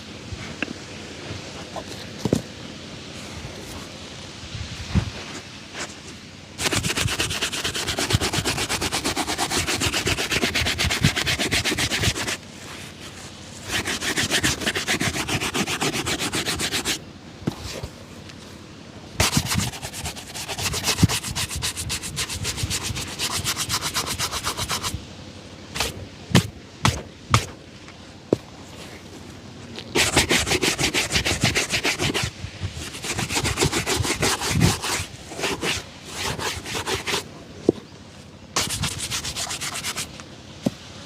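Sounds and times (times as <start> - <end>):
brush scrubbing leather shoe: 5.0 - 18.0, 19.2 - 25.0, 25.8 - 27.5, 29.9 - 37.3, 38.6 - 40.2.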